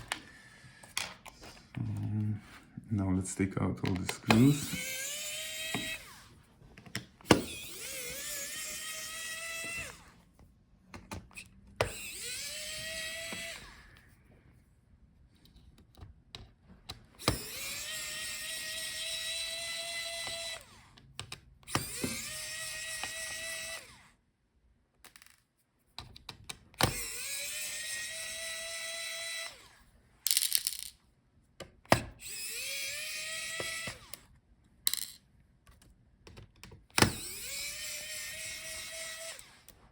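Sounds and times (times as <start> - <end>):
electric screwdriver motor whine: 4.3 - 6.3, 7.2 - 10.2, 11.3 - 14.1, 17.2 - 20.9, 21.7 - 24.1, 26.8 - 29.8, 32.2 - 34.2, 37.0 - 39.8.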